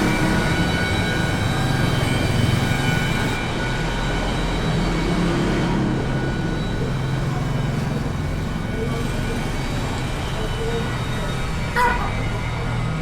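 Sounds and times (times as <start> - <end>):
thin high whine: 0.0 - 12.7
vehicle engine running: 5.9 - 12.7.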